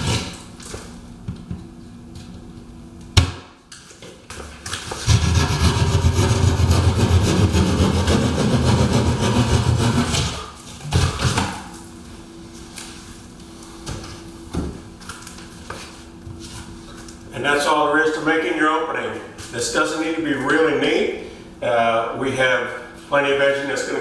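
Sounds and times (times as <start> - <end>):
saw rasping through wall: 5.0 - 11.6.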